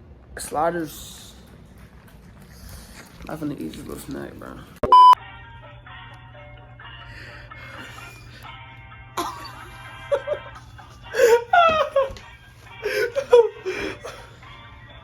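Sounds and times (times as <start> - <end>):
background music: 5.0 - 15.0.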